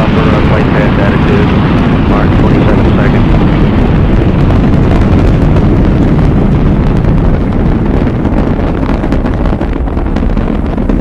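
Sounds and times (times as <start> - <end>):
rocket engine rumble with crackling: 0.0 - 11.0.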